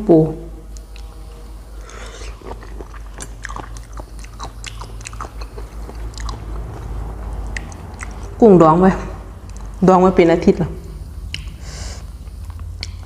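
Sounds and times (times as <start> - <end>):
close-up chewing and crunching: 0.7 - 8.4.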